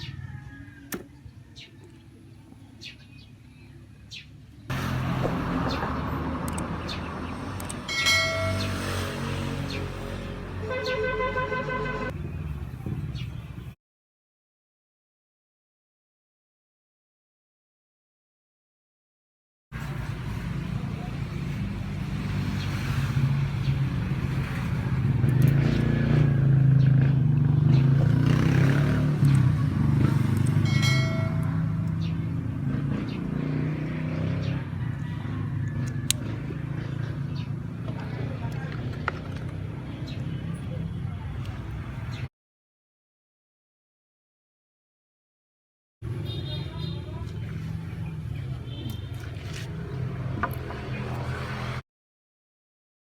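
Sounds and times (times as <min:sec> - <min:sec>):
birds chirping: 0:00.0 - 0:04.7, 0:05.3 - 0:13.8, 0:22.6 - 0:42.3.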